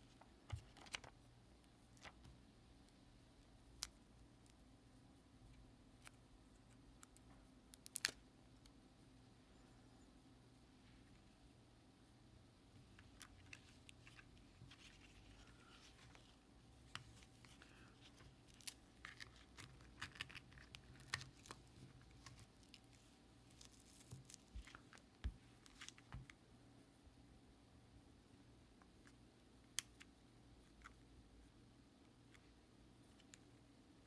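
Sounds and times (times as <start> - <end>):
low steady hum: 0.0 - 34.0
faint irregular clicks: 5.4 - 8.8
light rustling of small objects: 12.7 - 26.4.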